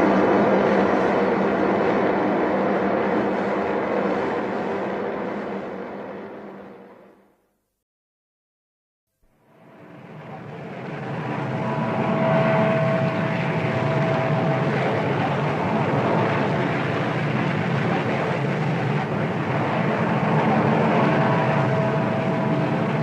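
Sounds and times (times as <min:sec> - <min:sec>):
mechanical drone: 0:09.4 - 0:23.0.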